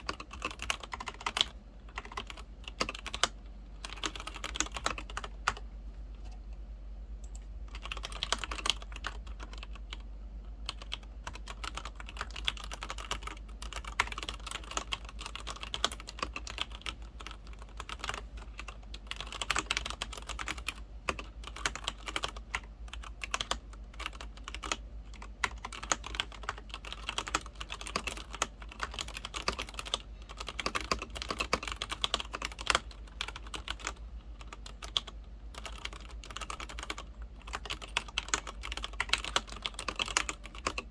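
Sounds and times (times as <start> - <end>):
fast typing on mechanical keyboard: 0.0 - 5.6, 7.7 - 40.9.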